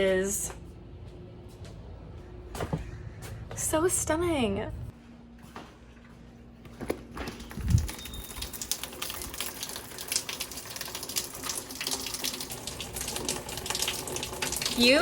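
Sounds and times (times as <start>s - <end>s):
rain falling: 7.8s - 15.0s.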